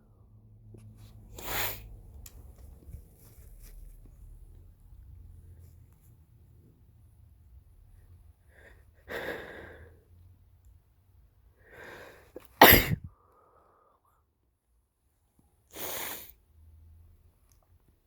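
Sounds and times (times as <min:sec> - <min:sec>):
man sneezing: 0:12.6 - 0:13.1.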